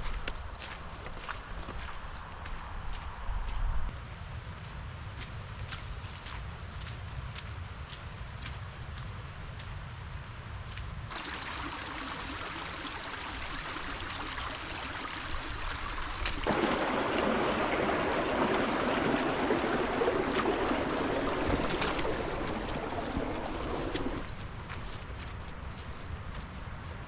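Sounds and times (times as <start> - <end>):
stream water rushing: 11.1 - 24.3.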